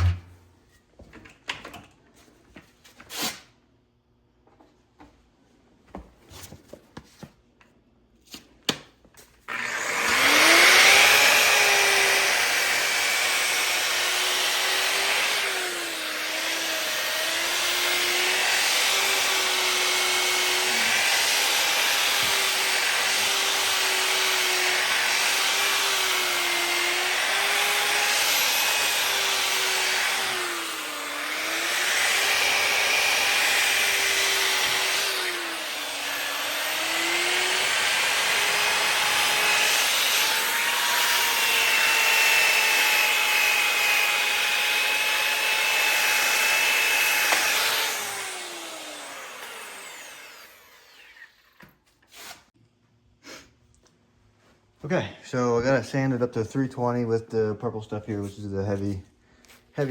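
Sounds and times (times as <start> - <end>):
grinder running: 0.0 - 0.3, 9.5 - 52.3.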